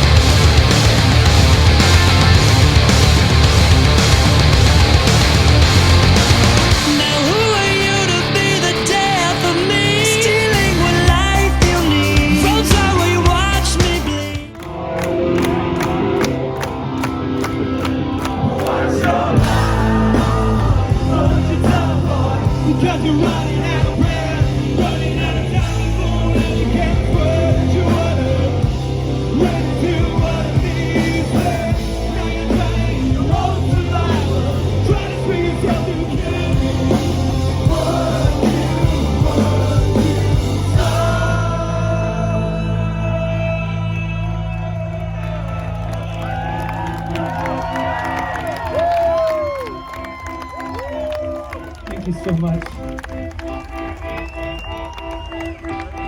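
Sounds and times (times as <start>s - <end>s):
rock band playing: 0.0s - 56.0s
singer yelling vocals: 5.5s - 14.9s, 18.5s - 45.8s.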